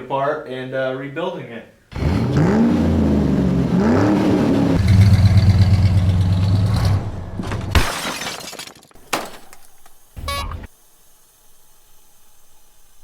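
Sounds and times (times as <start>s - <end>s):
engine revving: 1.9s - 7.3s.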